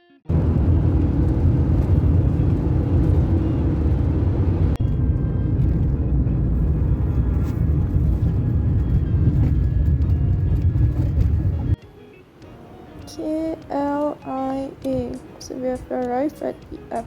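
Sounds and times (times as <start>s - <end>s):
car driving rumble: 0.3s - 11.8s.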